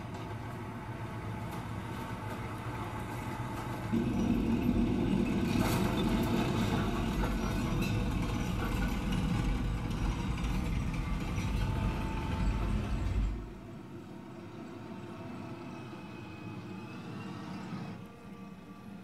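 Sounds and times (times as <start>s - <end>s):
vehicle engine rumbling: 0.0s - 13.7s.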